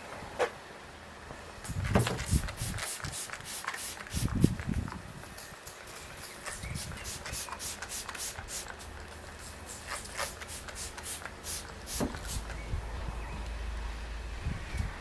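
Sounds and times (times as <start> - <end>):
sandpaper rubbing on paint: 9.4 - 12.5.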